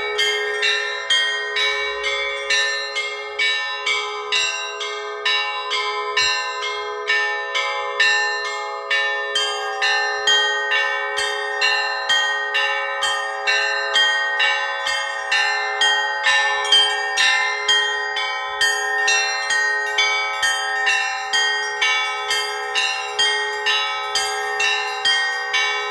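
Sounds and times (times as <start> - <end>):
church bells pealing: 0.0 - 25.9.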